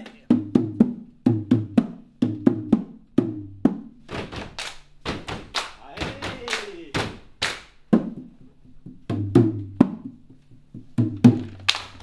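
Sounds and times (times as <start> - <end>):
hollow wood-block-like knocks: 0.5 - 8.3
hand slaps on body: 4.1 - 7.7, 11.4 - 12.0.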